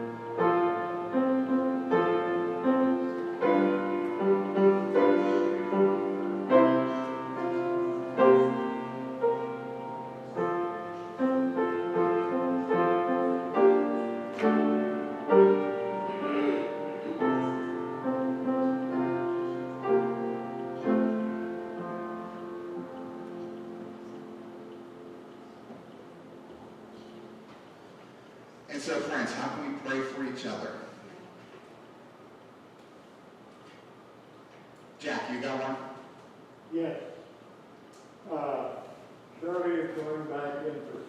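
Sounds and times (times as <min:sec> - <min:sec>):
solo piano: 0:00.0 - 0:27.5.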